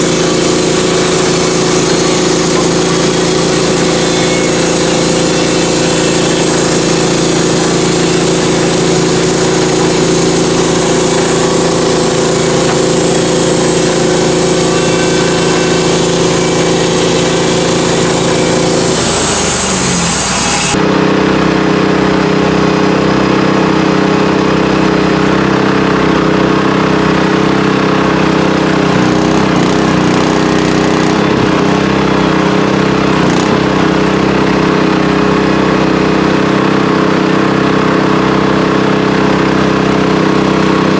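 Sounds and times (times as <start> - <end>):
sawmill engine droning: 0.0 - 40.9.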